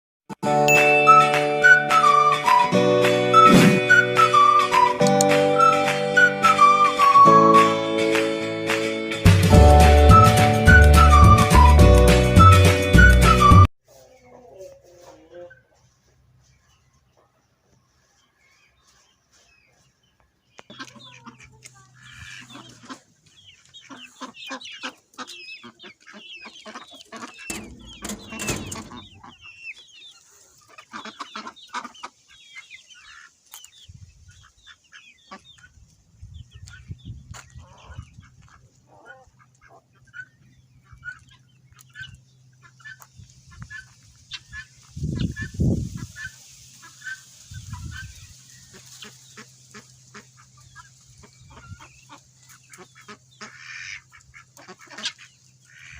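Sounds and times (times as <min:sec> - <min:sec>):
chickens clucking: 0:13.9 - 0:55.9.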